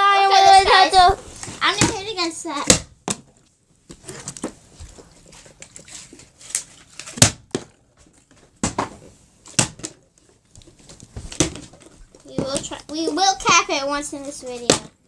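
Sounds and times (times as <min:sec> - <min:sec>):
plastic bottles knocking on hard surface: 0:11.2 - 0:15.0.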